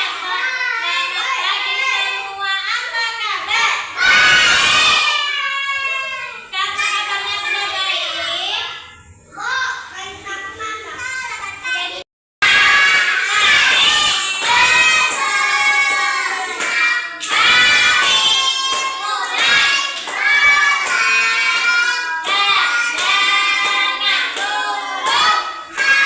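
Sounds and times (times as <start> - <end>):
children singing: 12.4 - 26.0.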